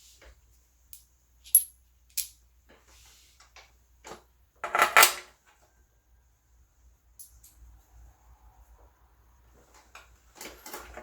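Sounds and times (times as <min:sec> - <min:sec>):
metal hardware clinking: 0:00.9 - 0:02.4.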